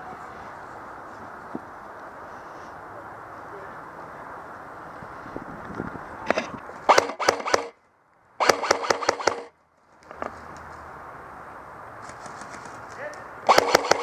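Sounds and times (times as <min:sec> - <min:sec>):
airsoft gun rapid shots: 0:06.9 - 0:07.8, 0:08.4 - 0:09.5, 0:13.5 - 0:14.0.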